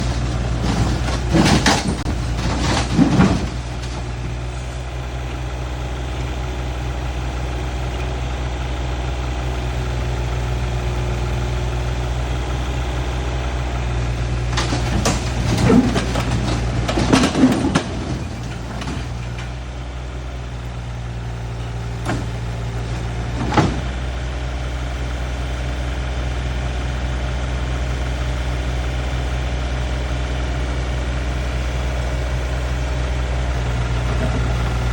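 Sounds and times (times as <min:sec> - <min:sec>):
metal clanking: 0:00.0 - 0:04.6, 0:14.4 - 0:19.6
excavator engine running: 0:00.0 - 0:34.9.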